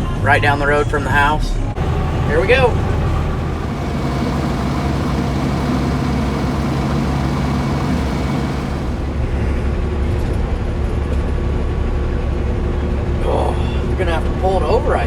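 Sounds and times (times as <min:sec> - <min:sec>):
road noise: 0:01.8 - 0:09.6
truck diesel engine running: 0:01.8 - 0:09.6.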